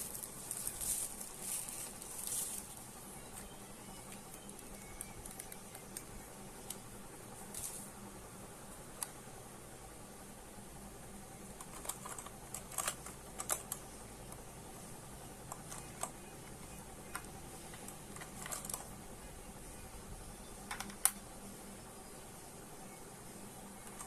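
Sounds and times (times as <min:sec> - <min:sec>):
mechanical keyboard clicks: 0:04.1 - 0:06.8, 0:11.6 - 0:14.4.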